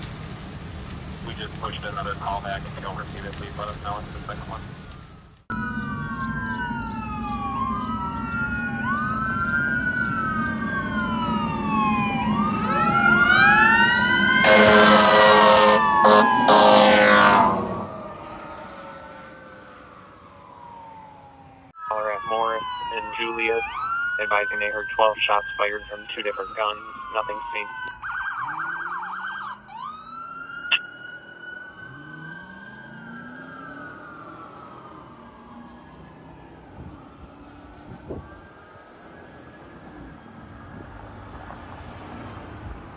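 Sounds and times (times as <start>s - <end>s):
fire engine siren wailing: 2.7s - 42.9s
truck engine revving: 10.1s - 20.0s
air horn: 14.4s - 18.4s.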